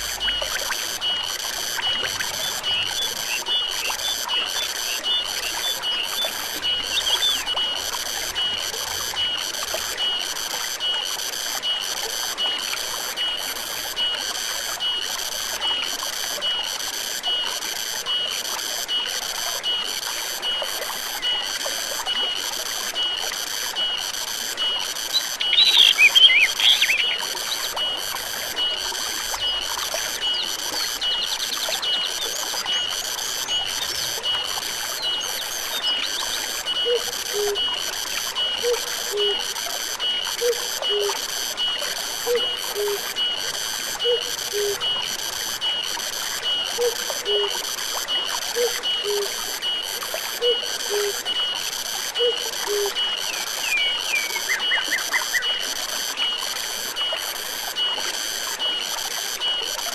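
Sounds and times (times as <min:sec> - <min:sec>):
stream water trickling: 0:00.0 - 0:59.9
warbling bird call: 0:01.6 - 0:07.6, 0:25.0 - 0:27.8, 0:34.9 - 0:37.7, 0:38.5 - 0:39.5, 0:40.4 - 0:41.2, 0:42.3 - 0:43.3, 0:44.0 - 0:45.0, 0:46.5 - 0:47.6, 0:48.5 - 0:49.5, 0:50.4 - 0:51.3, 0:52.2 - 0:55.6
high chirping call: 0:25.1 - 0:27.7, 0:52.2 - 0:55.5.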